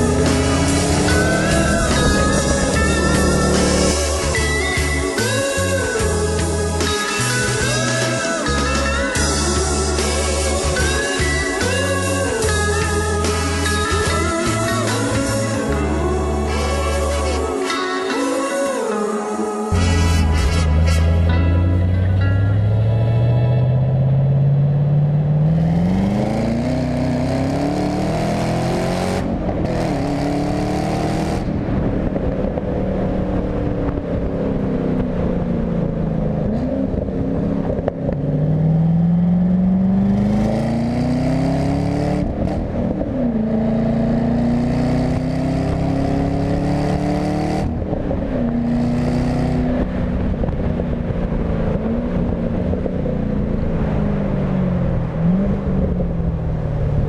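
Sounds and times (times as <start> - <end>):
car engine accelerating through gears: 0.0 - 6.6, 20.0 - 57.0.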